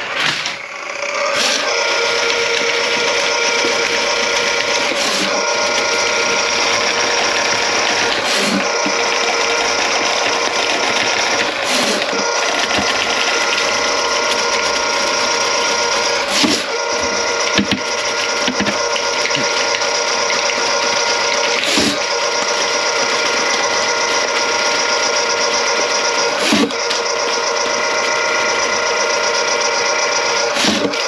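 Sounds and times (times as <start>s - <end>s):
mechanical hum with a whine: 0.0s - 31.0s
sink drain gurgling: 0.7s - 31.0s.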